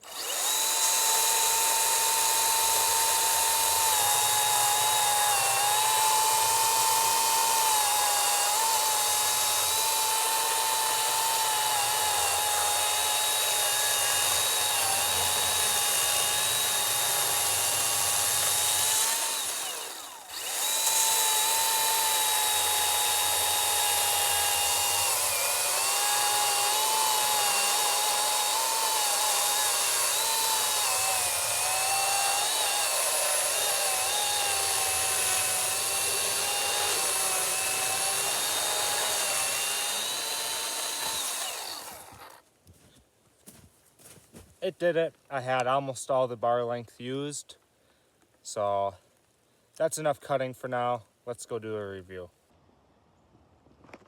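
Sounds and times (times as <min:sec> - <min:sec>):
electric chainsaw cutting log: 0:00.0 - 0:42.4.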